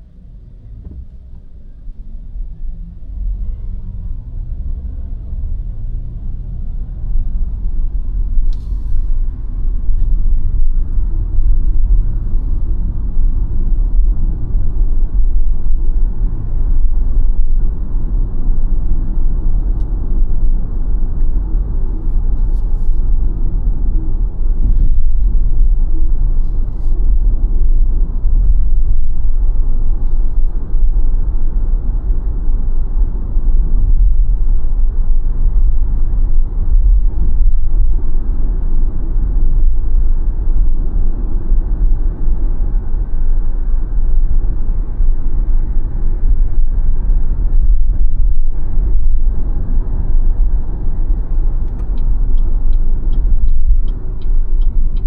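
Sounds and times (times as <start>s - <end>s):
road and tyre rumble: 0.0s - 55.0s.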